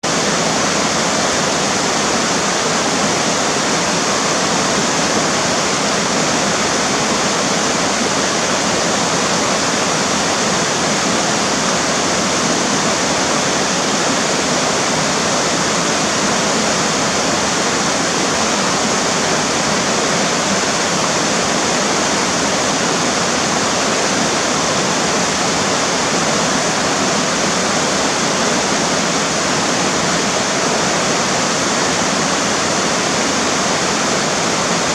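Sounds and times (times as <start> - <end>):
river rushing over rocks: 0.0 - 34.9.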